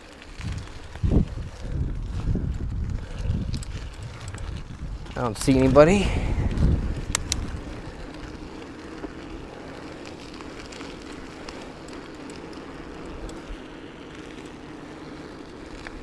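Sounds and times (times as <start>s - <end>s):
bike tyres rolling on road: 0.0s - 16.0s
wind rumble on microphone: 0.2s - 9.5s
faint ticks: 2.8s - 5.5s, 6.5s - 16.0s.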